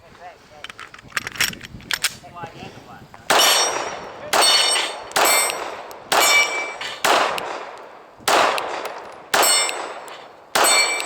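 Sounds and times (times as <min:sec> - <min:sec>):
pistol shots: 0:03.3 - 0:11.0
steel target plate clanging: 0:03.4 - 0:07.0, 0:09.4 - 0:11.0.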